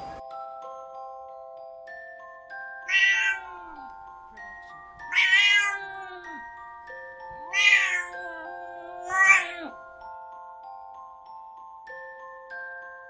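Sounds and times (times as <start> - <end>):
soft chiming music: 0.0 - 13.0
cat meowing: 2.9 - 3.9, 5.0 - 6.5, 7.4 - 9.8.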